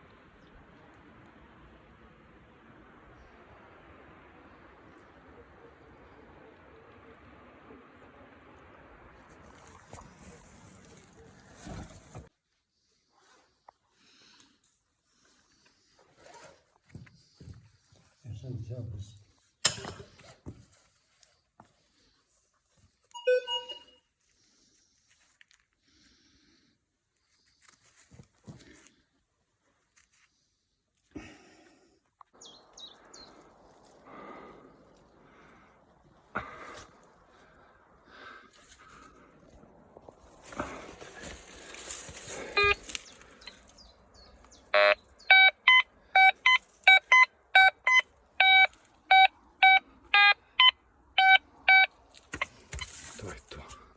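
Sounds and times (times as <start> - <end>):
rustling: 9.3 - 12.3, 40.0 - 45.0
metal detector beep: 23.1 - 24.1, 42.4 - 43.6, 44.7 - 53.0
scraping and knocking from digging: 52.2 - 53.4.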